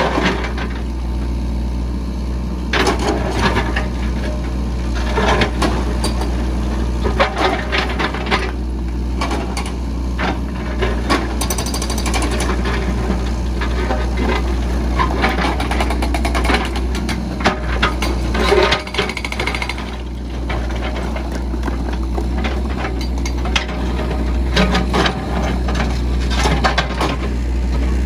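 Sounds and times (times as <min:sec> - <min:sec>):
diesel engine running: 0:00.0 - 0:28.0
sharp metallic knocks and clanks: 0:11.4 - 0:12.6.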